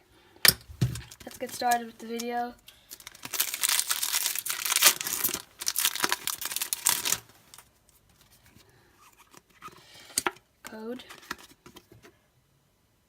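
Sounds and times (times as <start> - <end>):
foil wrapper tearing and crumpling: 1.0 - 1.9, 2.8 - 7.7.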